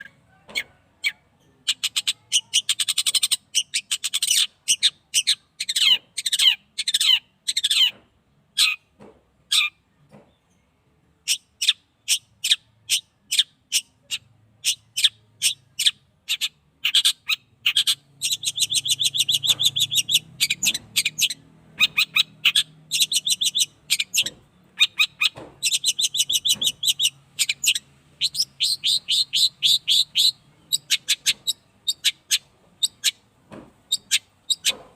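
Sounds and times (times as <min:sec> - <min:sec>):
shrike singing chattering phrases: 0:00.0 - 0:07.2.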